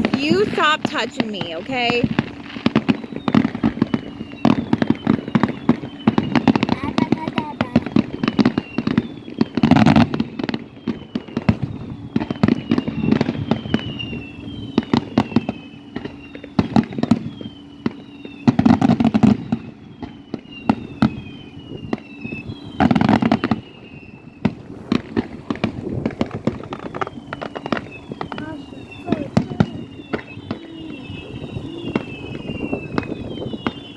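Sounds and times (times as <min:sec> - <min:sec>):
falling firework whistles: 0:00.0 - 0:33.9
firework bangs and crackling: 0:00.0 - 0:33.9.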